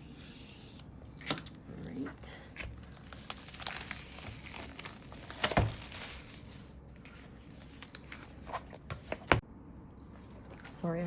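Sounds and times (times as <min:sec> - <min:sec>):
paper rustling: 0:02.6 - 0:09.4.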